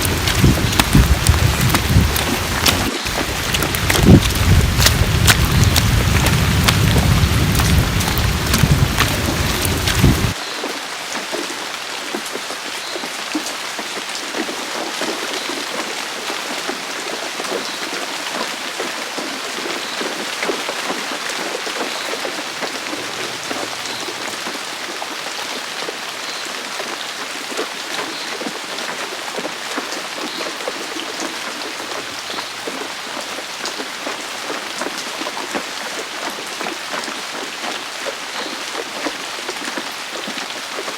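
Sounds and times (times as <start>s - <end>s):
deep rumble: 0.0s - 10.4s
heavy rain falling: 0.0s - 40.9s.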